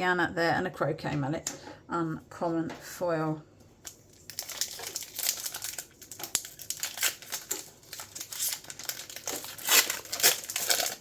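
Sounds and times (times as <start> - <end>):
wrapper crinkling and tearing: 3.8 - 11.0.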